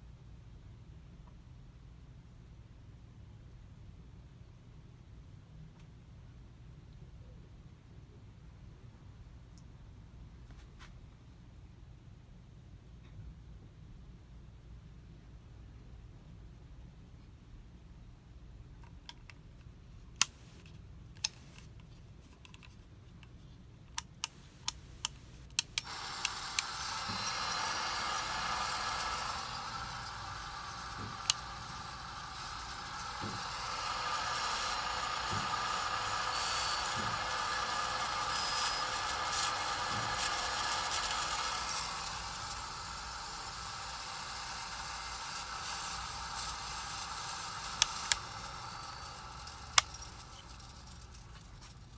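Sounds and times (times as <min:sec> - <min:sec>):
sharp clicks: 0:24.0 - 0:51.7
ceiling fan rough low rumble: 0:24.5 - 0:51.9.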